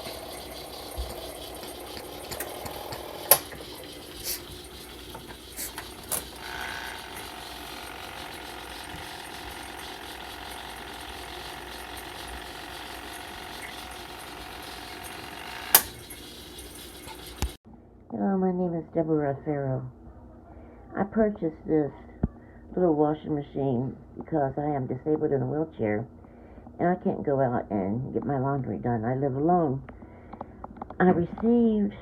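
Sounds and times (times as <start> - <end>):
washing machine humming: 0.0 - 17.6.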